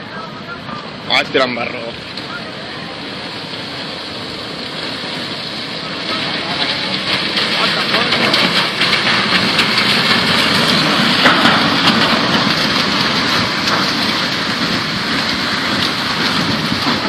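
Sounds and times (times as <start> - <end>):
river water roaring: 0.0 - 17.0.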